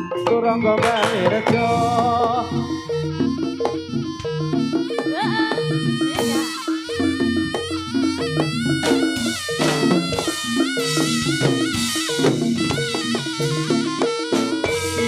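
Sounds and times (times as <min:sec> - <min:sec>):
drums and percussion: 0:00.0 - 0:15.0
repeating bass pattern: 0:00.0 - 0:15.0
wavering lead melody: 0:00.0 - 0:15.0.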